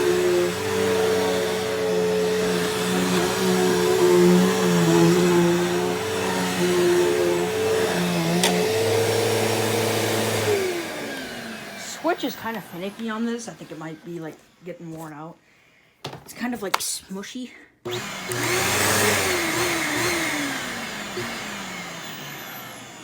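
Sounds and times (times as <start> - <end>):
vacuum motor winding down: 0.0 - 14.1, 17.9 - 23.0
vacuum cleaner running: 0.0 - 15.2, 17.9 - 23.0.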